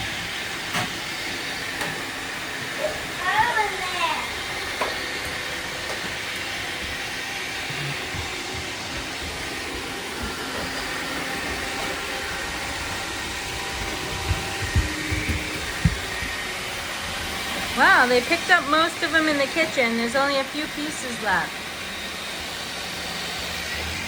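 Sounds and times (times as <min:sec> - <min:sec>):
robot vacuum whirring: 0:00.0 - 0:24.0
low thumps: 0:13.8 - 0:16.2.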